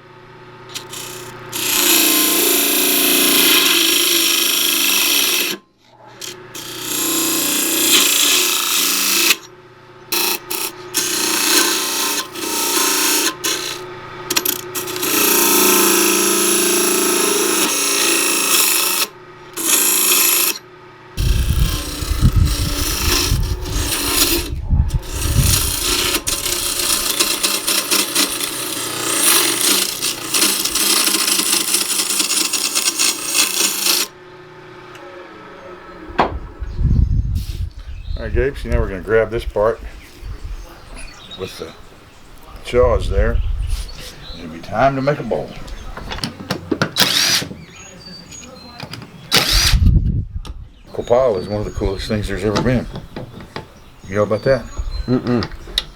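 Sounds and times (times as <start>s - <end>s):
wood lathe gouge scraping: 0.7s - 5.6s, 6.2s - 9.5s, 10.1s - 20.6s, 21.2s - 34.1s, 43.8s - 49.8s
low rumble: 21.2s - 26.8s, 35.5s - 41.1s.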